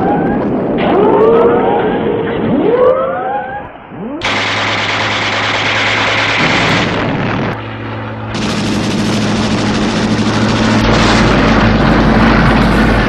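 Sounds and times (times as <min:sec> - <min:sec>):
engine drone: 0:00.0 - 0:13.0
deep low hum: 0:03.6 - 0:13.0
gunfire and battle noise: 0:04.2 - 0:07.6, 0:08.3 - 0:13.0.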